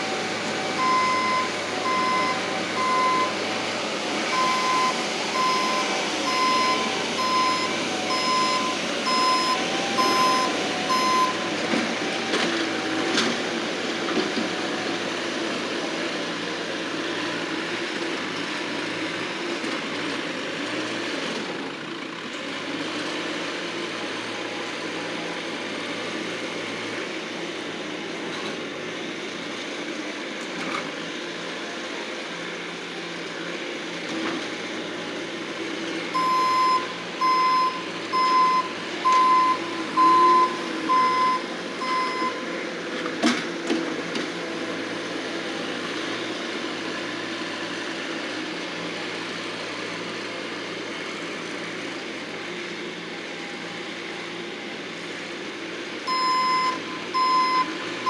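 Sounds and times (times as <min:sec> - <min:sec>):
loader engine running: 0:00.0 - 0:58.0
backup alarm beeping: 0:00.7 - 0:03.4, 0:04.3 - 0:11.5, 0:36.2 - 0:42.4, 0:56.1 - 0:57.7.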